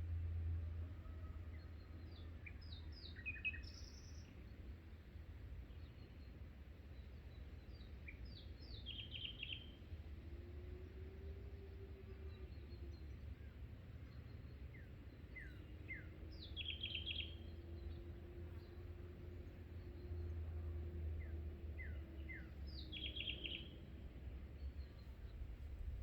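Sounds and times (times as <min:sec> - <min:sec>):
songbird calling: 0:07.8 - 0:09.8, 0:12.4 - 0:26.0
steady low rumble: 0:23.7 - 0:26.0.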